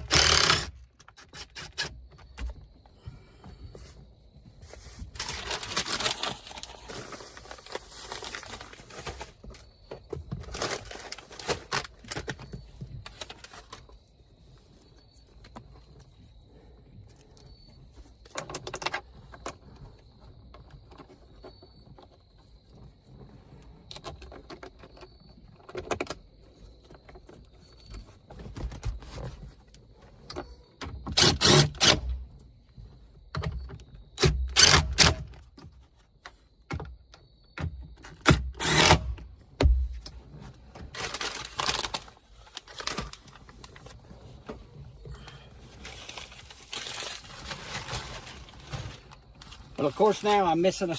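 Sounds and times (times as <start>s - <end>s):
plastic panels and tools clattering: 5.0s - 13.9s.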